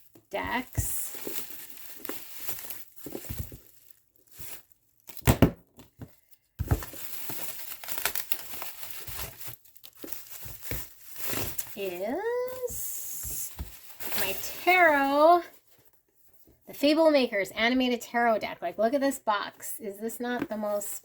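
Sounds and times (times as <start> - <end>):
packaging crinkling and tearing: 0.1 - 15.2.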